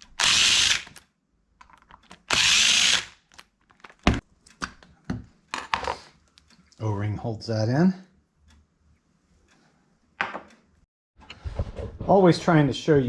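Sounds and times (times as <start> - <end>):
power drill whirring: 0.0 - 1.0, 2.2 - 3.2
clicks and knocks of tools: 0.9 - 2.2.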